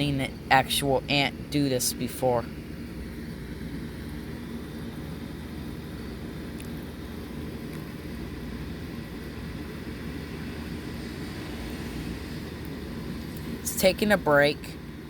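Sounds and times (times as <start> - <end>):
faint hum: 0.0 - 15.0
low background rumble: 0.0 - 15.0.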